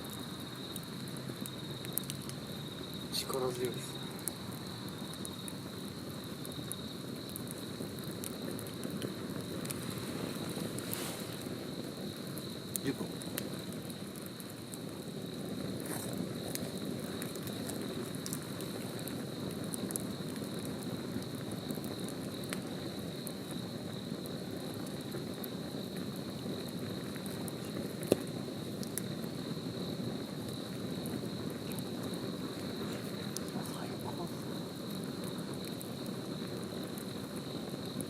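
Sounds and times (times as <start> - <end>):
campfire crackling and popping: 0.0 - 38.0
insect trill: 0.0 - 38.0.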